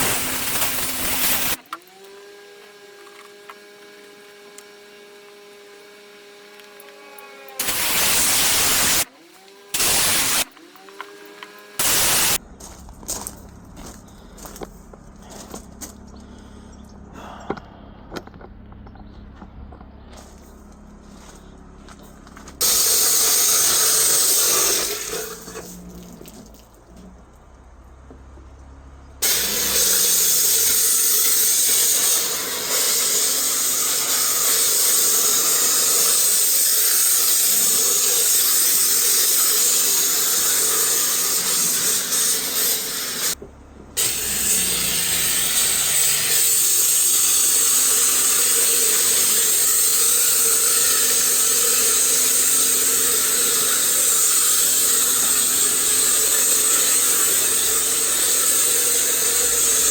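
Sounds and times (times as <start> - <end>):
pressure washer spraying: 0.0 - 1.7, 7.4 - 10.6, 11.6 - 12.4, 22.6 - 26.6, 29.2 - 43.4, 44.0 - 59.9.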